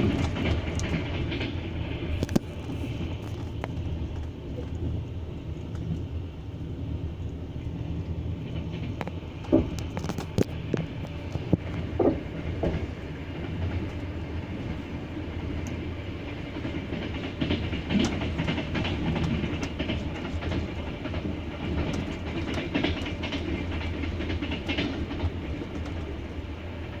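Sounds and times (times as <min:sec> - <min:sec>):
train rumbling at speed: 0:00.0 - 0:27.0
wheels clattering over rail joints: 0:08.4 - 0:14.8, 0:16.4 - 0:26.3
sharp knocks: 0:09.5 - 0:09.9, 0:11.9 - 0:12.9.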